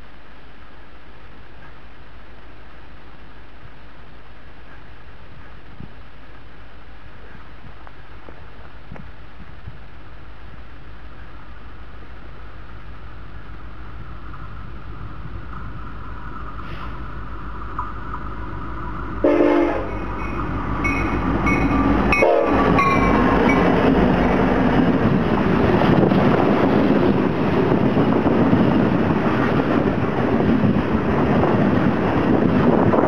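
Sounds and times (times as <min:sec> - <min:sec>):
train wheels rushing on rails: 0:00.0 - 0:33.0
locomotive horn blasts: 0:19.2 - 0:23.2.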